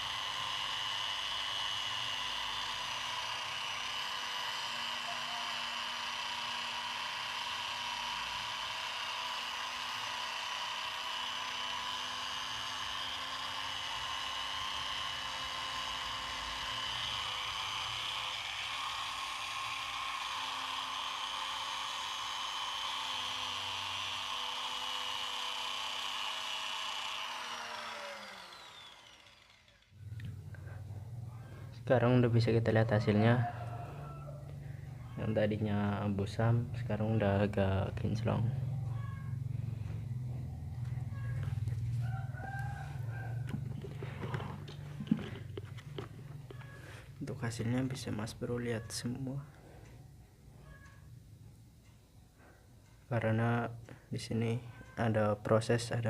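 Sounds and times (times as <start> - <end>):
electric drill running: 0.0 - 49.8.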